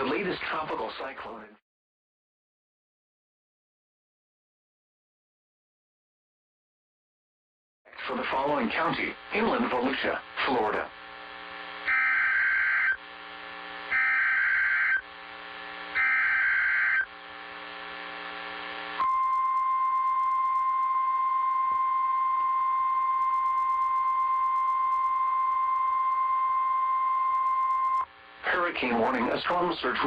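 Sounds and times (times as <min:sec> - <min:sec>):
faint radio hiss and hum: 0:07.9 - 0:20.7, 0:27.3 - 0:30.0
buzzing digital data bursts: 0:10.6 - 0:20.6
steady warning alarm tone: 0:11.7 - 0:17.4.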